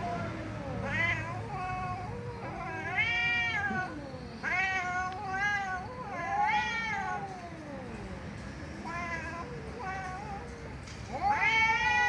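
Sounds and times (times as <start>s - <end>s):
cat meowing: 0.0s - 8.2s, 8.8s - 12.0s.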